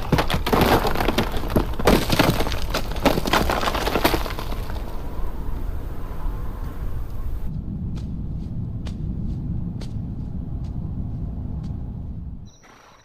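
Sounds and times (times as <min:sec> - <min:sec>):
sharp breaking impacts: 0:00.0 - 0:05.0
steady low noise: 0:05.2 - 0:12.5.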